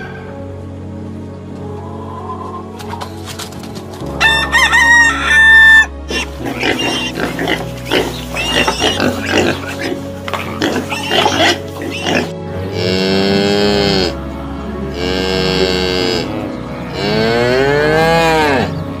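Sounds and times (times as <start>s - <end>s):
cow grunts: 6.1s - 14.2s, 14.9s - 18.8s
cow mooing: 6.2s - 14.2s, 14.9s - 18.8s.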